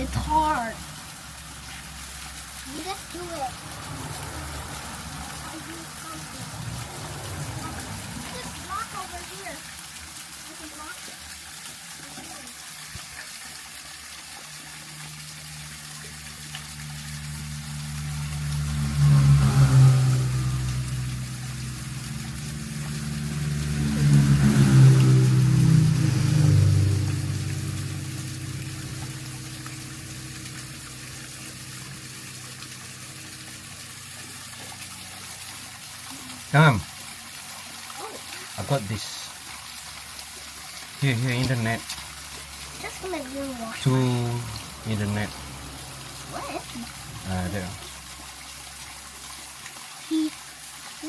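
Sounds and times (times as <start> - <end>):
stream water trickling: 0.0 - 51.0
vehicle motor hum: 2.7 - 8.8, 15.5 - 35.3, 43.0 - 48.1.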